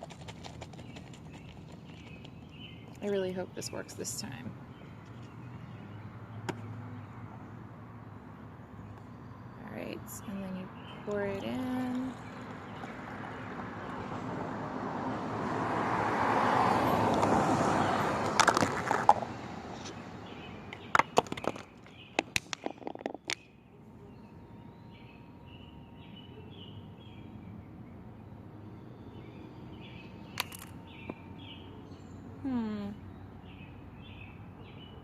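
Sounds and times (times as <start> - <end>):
birds chirping faintly: 0.0 - 14.4, 19.3 - 35.0
containers clicking and knocking: 18.3 - 19.3, 20.8 - 23.4.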